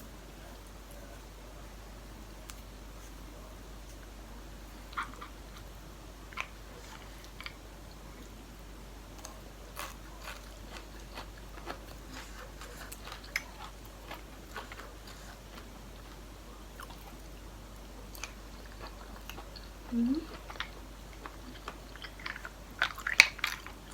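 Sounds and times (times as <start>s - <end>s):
person chewing and biting food: 6.3s - 8.0s, 9.1s - 17.3s, 18.0s - 23.9s.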